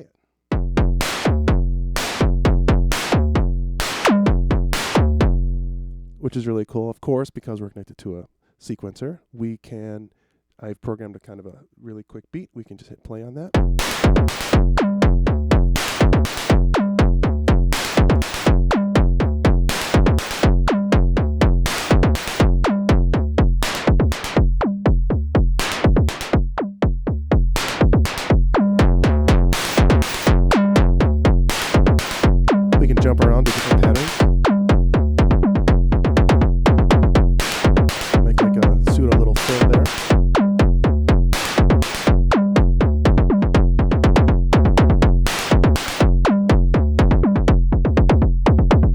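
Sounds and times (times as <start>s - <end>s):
synthesized kick drum: 0.5s - 5.6s, 13.6s - 48.9s
noise snare hits: 3.8s - 4.2s, 13.8s - 14.6s, 23.6s - 24.4s, 25.6s - 26.4s, 27.6s - 28.4s, 29.5s - 30.4s, 31.5s - 32.4s, 33.4s - 34.3s, 37.4s - 38.7s, 39.4s - 40.2s, 41.4s - 42.1s.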